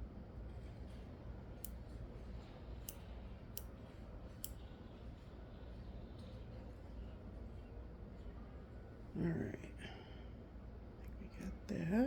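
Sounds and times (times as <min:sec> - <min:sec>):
low steady hum: 0:00.0 - 0:12.0
small sharp clicks of tools: 0:01.6 - 0:01.8, 0:02.8 - 0:03.8, 0:04.4 - 0:04.6.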